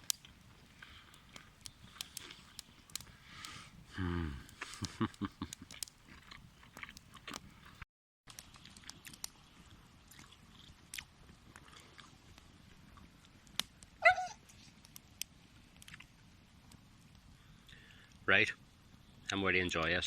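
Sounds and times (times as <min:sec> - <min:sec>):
faint clicks: 0:00.0 - 0:06.0
dog whining: 0:14.0 - 0:14.4.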